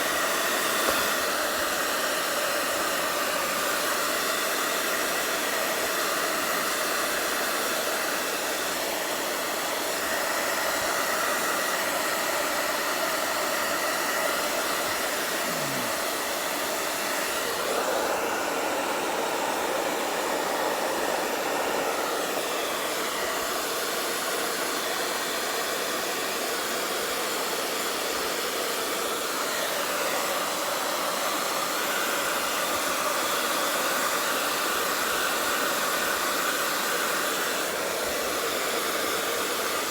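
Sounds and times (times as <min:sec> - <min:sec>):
hair dryer blowing: 0:00.0 - 0:39.9.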